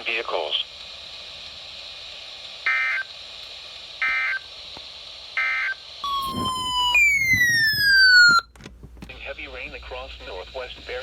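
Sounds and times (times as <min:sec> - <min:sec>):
harsh digital screeches: 0:06.0 - 0:08.4
sliding pitch tone: 0:06.0 - 0:08.4.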